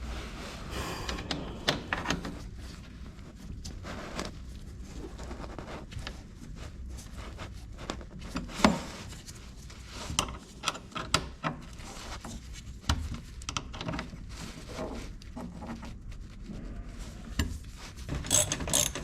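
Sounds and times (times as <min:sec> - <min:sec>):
sharp knock: 0:00.7 - 0:02.5.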